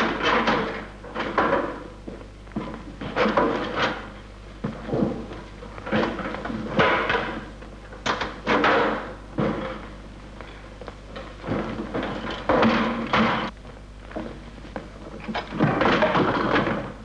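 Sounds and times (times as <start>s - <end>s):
metal parts clunking and rattling: 0.0s - 1.9s, 2.6s - 4.2s, 4.8s - 10.0s, 11.2s - 13.5s, 15.1s - 17.0s.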